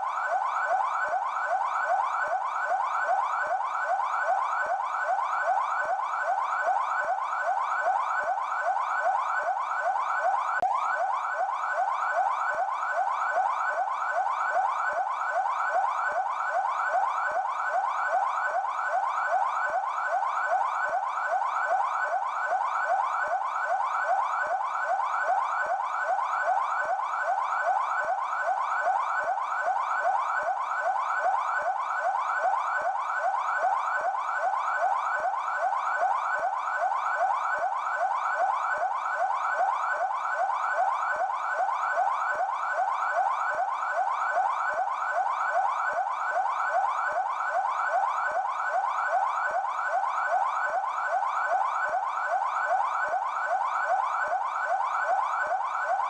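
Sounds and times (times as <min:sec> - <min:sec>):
police siren yelping: 0:00.0 - 0:56.0.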